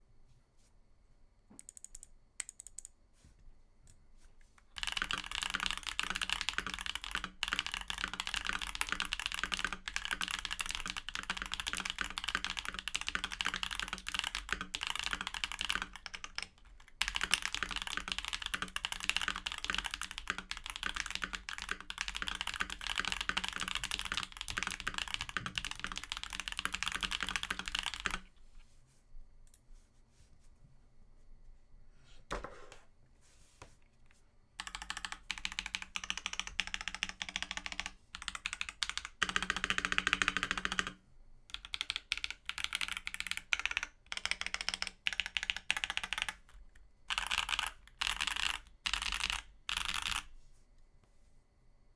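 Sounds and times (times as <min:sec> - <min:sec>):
typing on mechanical keyboard: 0:01.6 - 0:02.9, 0:04.8 - 0:28.3, 0:34.6 - 0:50.3.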